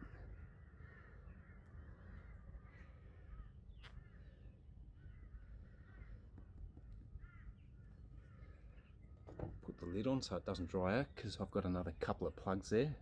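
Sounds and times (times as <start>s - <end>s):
crows cawing: 0.0s - 4.4s, 5.0s - 6.3s, 7.2s - 7.6s.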